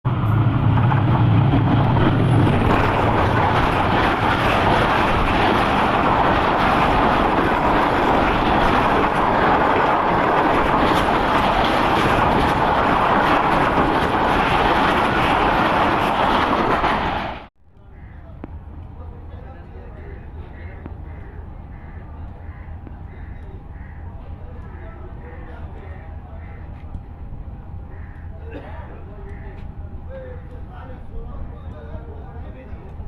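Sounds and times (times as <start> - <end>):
train wheels clattering on rails: 0.1 - 17.5
locomotive engine hum: 0.1 - 33.0.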